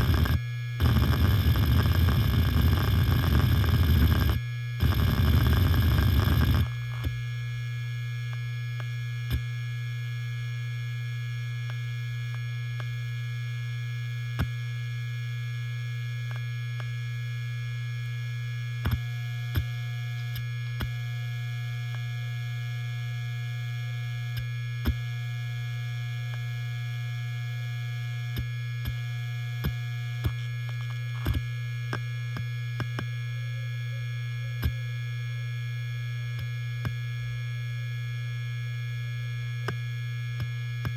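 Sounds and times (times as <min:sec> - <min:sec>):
hard disk drive spinning: 0:00.0 - 0:07.3.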